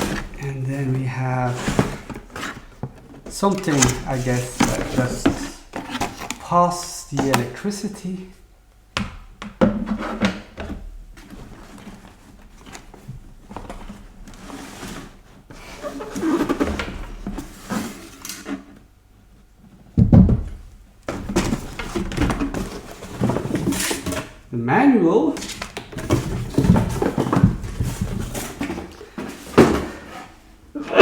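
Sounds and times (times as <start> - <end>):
packaging rustling: 0.0 - 7.6.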